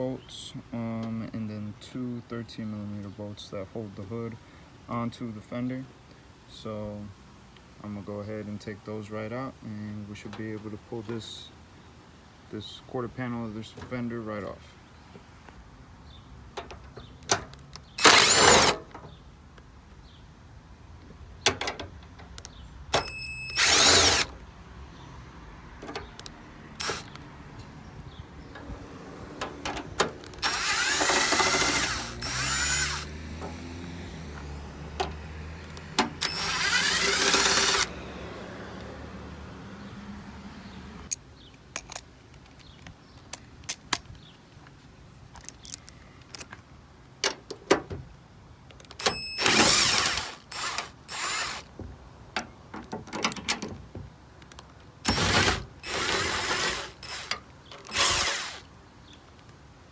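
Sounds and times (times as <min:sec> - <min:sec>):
power tool spinning bolts: 0:18.0 - 0:18.9, 0:23.0 - 0:24.4, 0:26.8 - 0:27.2, 0:28.5 - 0:38.2, 0:48.9 - 0:51.8, 0:55.0 - 0:58.7
metal clicks and clanks: 0:52.4 - 0:53.8.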